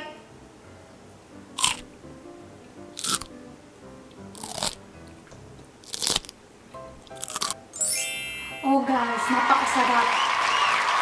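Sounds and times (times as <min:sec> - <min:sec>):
soft background music: 0:00.0 - 0:09.9
crunchy biting and chewing: 0:01.6 - 0:01.9, 0:03.0 - 0:03.4, 0:04.2 - 0:06.4, 0:07.0 - 0:07.7.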